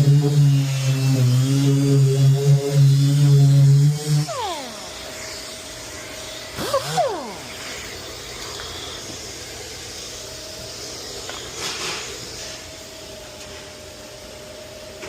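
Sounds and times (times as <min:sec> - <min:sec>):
sanding tool spinning: 0:06.6 - 0:07.8.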